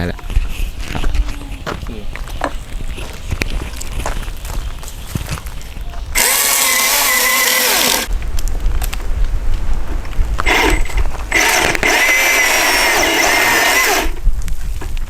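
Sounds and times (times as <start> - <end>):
electric chainsaw motor whine: 5.4 - 8.1, 10.4 - 14.2.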